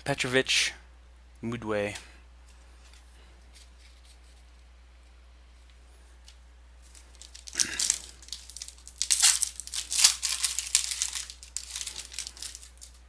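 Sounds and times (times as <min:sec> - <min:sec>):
plastic wrapper tearing and crinkling: 0:06.8 - 0:13.0.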